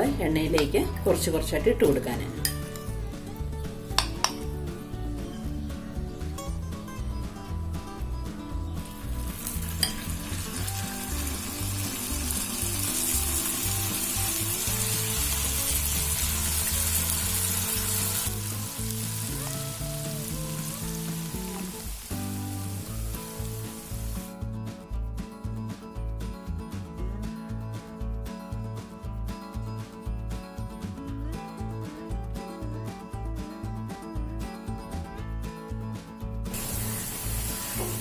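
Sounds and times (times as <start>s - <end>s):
background music: 0.0s - 38.0s
food sizzling in hot oil: 8.8s - 24.3s, 36.5s - 38.0s.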